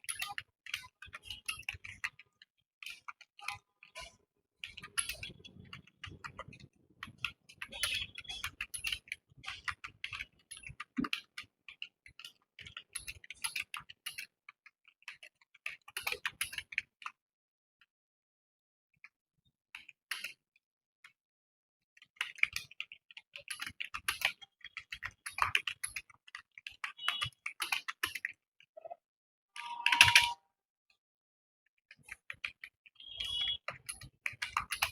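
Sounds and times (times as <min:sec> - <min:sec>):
keyboard key clicks typing: 0:23.4 - 0:28.3, 0:29.6 - 0:30.4.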